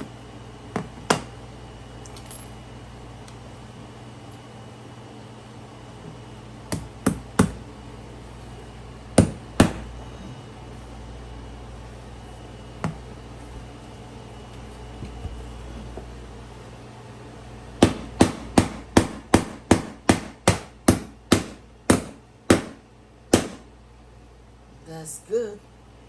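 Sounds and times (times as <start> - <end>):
hammer driving nail into wood: 17.8 - 23.6.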